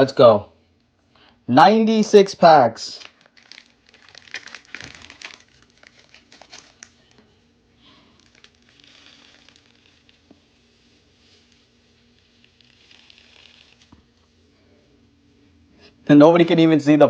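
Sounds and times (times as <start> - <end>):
foil wrappers crinkling: 2.9 - 14.3.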